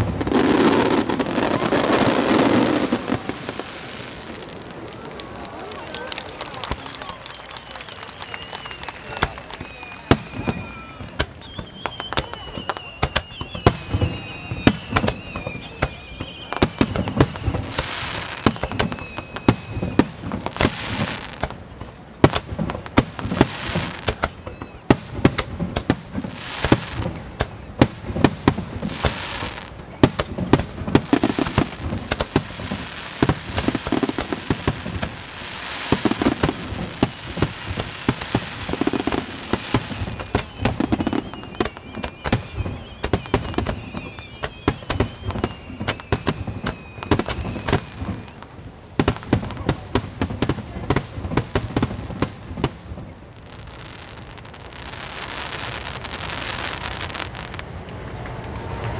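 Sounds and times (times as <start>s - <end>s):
fireworks bangs and booms: 0.0s - 58.9s.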